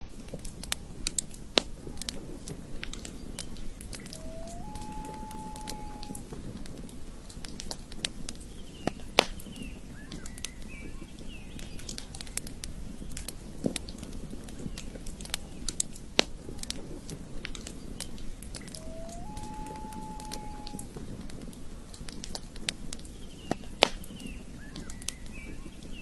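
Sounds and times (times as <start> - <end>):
low rumble of burning wood: 0.0 - 4.7, 5.3 - 19.4, 20.4 - 26.0
campfire crackling and popping: 0.0 - 26.0
birds chirping: 3.2 - 6.3, 17.9 - 21.0.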